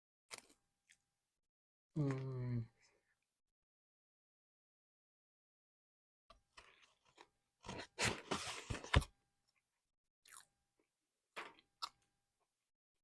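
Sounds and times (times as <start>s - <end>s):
person chewing crunchy food: 10.3s - 10.5s.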